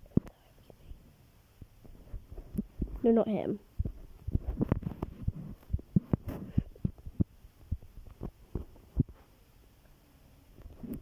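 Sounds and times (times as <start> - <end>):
soft thumps and clicks: 3.8 - 9.3.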